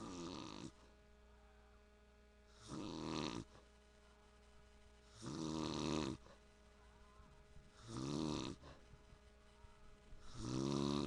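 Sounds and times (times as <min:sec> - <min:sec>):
man snoring: 0:00.0 - 0:00.8, 0:02.5 - 0:03.6, 0:05.1 - 0:06.3, 0:07.8 - 0:08.7, 0:10.2 - 0:11.0.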